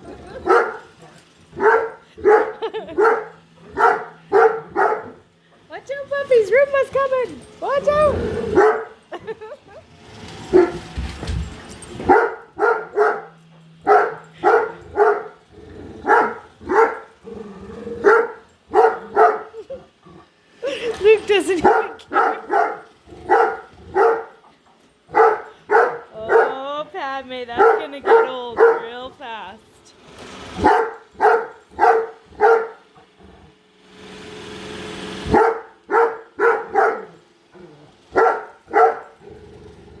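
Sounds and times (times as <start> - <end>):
robot vacuum whirring hum: 0.0 - 24.0, 26.1 - 38.8
dog barking deeply: 1.6 - 5.2, 30.6 - 32.8, 35.3 - 37.1, 38.2 - 39.1.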